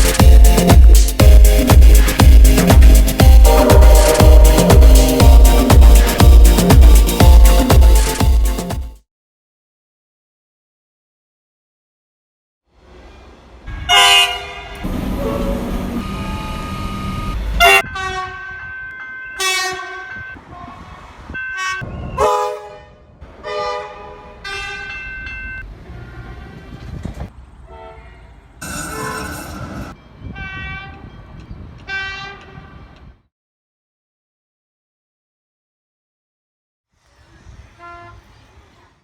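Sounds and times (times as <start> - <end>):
low train rumble: 12.8 - 25.1
train horn blasts: 13.7 - 15.8, 17.6 - 18.8, 19.4 - 20.8, 21.4 - 25.1, 27.7 - 28.2, 30.4 - 31.0, 31.9 - 32.8, 37.7 - 38.4.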